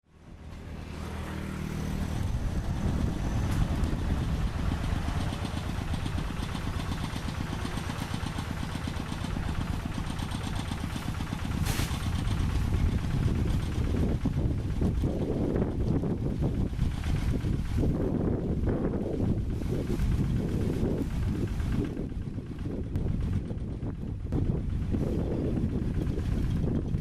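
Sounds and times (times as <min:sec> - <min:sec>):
hand tractor diesel engine: 0:00.1 - 0:27.0.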